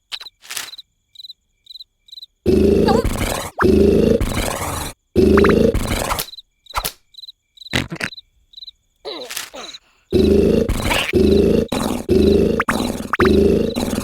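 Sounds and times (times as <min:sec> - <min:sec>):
crickets chirping: 0:00.0 - 0:14.0
cartoon snoring: 0:02.5 - 0:06.3, 0:09.1 - 0:14.0.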